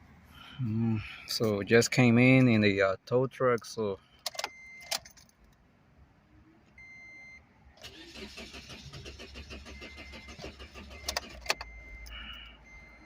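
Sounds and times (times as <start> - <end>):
car engine cranking on starter: 7.8 - 12.4.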